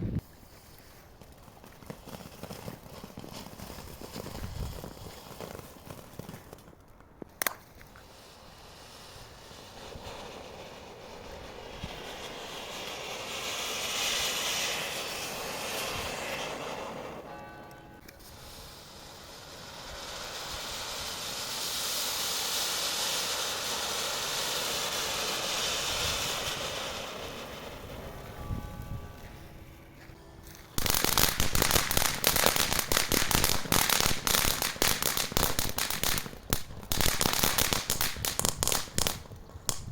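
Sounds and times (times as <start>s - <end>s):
fountain firework hissing: 7.8s - 17.4s, 18.2s - 28.8s, 30.8s - 39.2s.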